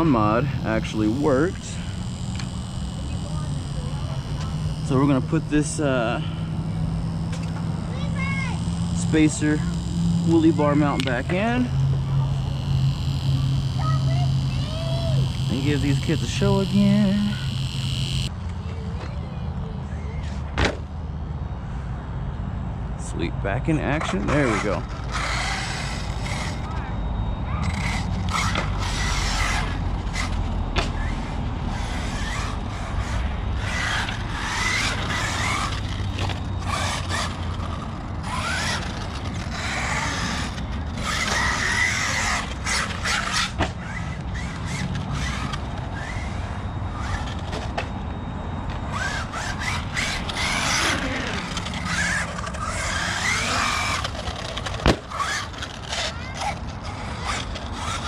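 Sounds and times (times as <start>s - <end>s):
electric motor whining: 0.0s - 18.8s, 24.1s - 58.0s
tyres squealing on concrete: 24.2s - 47.6s, 48.6s - 58.0s.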